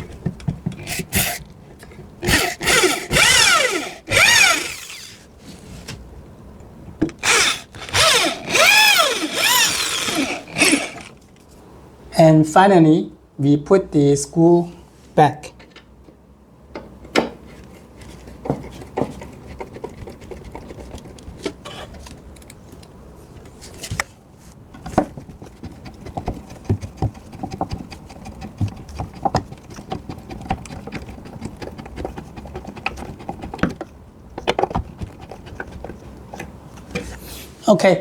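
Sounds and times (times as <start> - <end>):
screwdriver clicks and knocks: 7.0 - 11.1.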